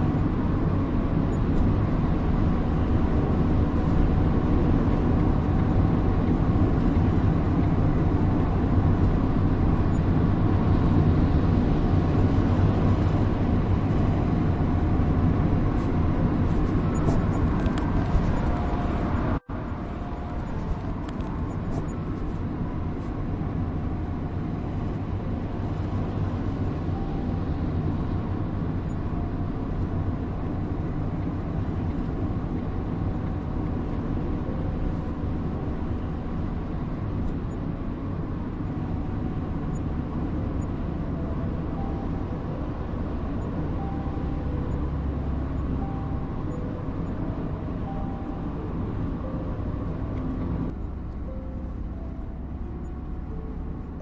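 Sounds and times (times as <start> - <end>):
car engine and road rumble: 0.0 - 54.0.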